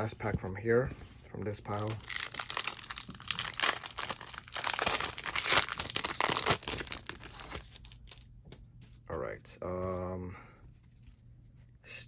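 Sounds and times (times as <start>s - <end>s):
wrapper crinkling and tearing: 1.7s - 8.3s.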